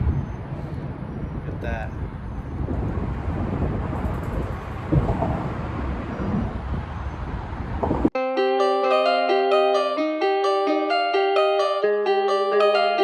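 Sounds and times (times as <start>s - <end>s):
low rumbling noise: 0.0s - 8.2s.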